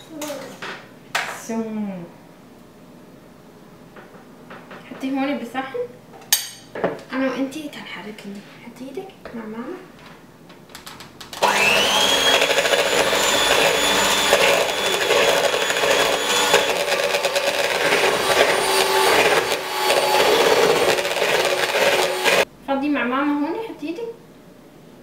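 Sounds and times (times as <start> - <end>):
beaters whisking batter: 11.4 - 22.5
electric hand mixer whining: 11.4 - 22.5.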